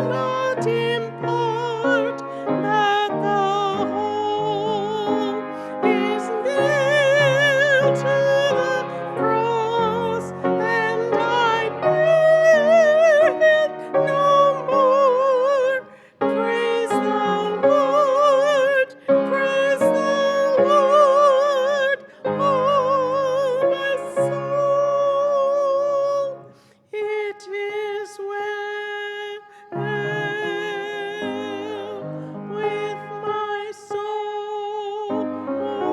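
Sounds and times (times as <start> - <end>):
woman singing a hymn: 0.0 - 26.4, 27.0 - 35.9
piano accompaniment: 0.0 - 35.9.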